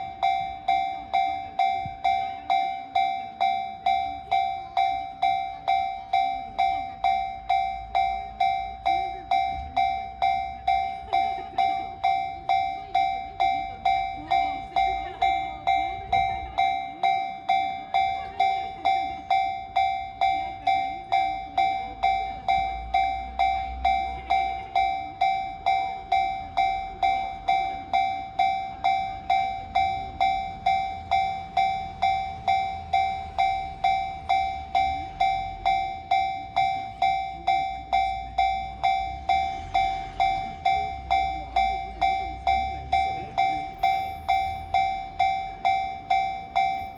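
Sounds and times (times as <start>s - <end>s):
level crossing warning bell ringing: 0.0s - 46.9s.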